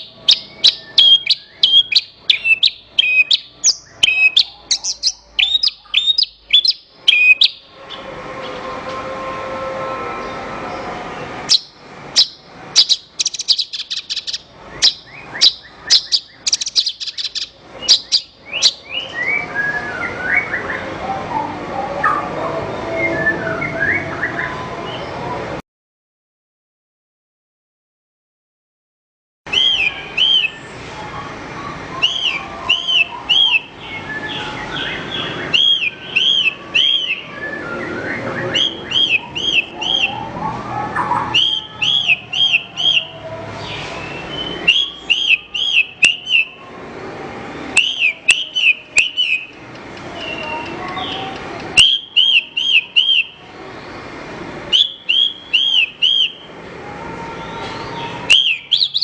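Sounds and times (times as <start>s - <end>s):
bird singing whistled notes: 0.0s - 8.0s, 11.5s - 20.8s, 29.5s - 30.7s, 32.0s - 40.4s, 41.0s - 43.1s, 43.8s - 46.6s, 47.8s - 49.6s, 50.2s - 53.4s, 54.7s - 56.5s, 58.3s - 59.0s.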